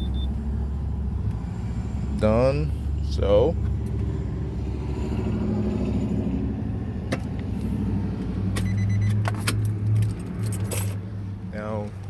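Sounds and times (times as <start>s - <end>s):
vehicle low hum: 0.0s - 12.0s
keys jangling: 8.6s - 11.0s.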